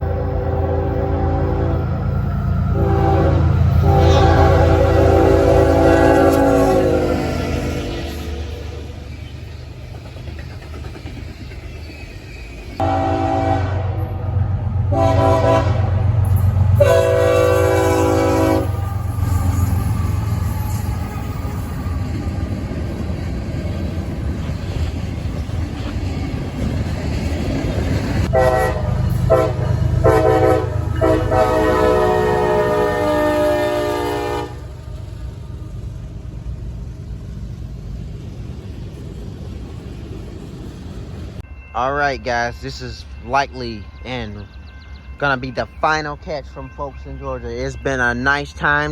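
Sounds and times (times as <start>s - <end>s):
train air horn blasts: 0.0s - 2.1s, 2.7s - 9.0s, 12.8s - 20.8s, 28.3s - 34.9s
train low rumble: 0.0s - 48.9s.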